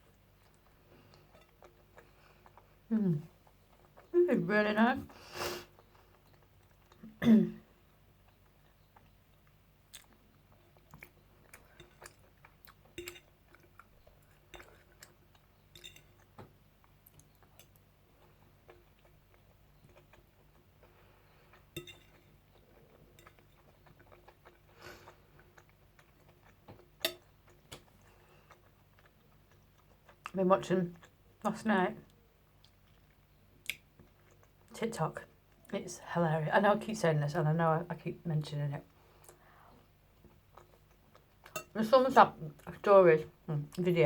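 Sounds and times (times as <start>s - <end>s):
person chewing: 0.0s - 4.1s, 5.6s - 7.2s, 8.2s - 30.3s, 32.1s - 34.7s, 39.1s - 41.7s.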